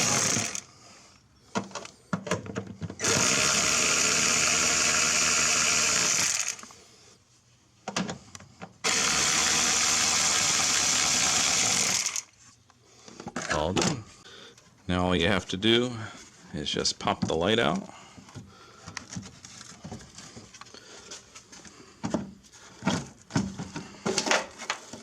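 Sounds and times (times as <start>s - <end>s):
power ratchet spinning: 0.0s - 0.7s, 3.0s - 6.7s, 8.8s - 12.3s.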